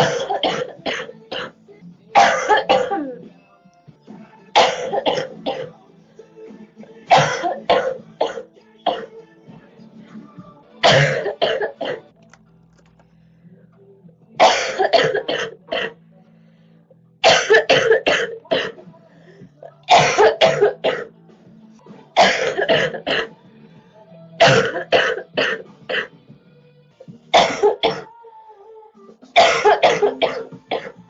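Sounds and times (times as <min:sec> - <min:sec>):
girl coughing: 0:00.0 - 0:01.6, 0:02.2 - 0:03.2, 0:04.6 - 0:05.7, 0:10.9 - 0:12.0, 0:14.4 - 0:16.0, 0:17.2 - 0:18.8, 0:19.9 - 0:21.1, 0:22.2 - 0:23.3, 0:24.4 - 0:26.1, 0:27.4 - 0:28.1, 0:29.4 - 0:31.0.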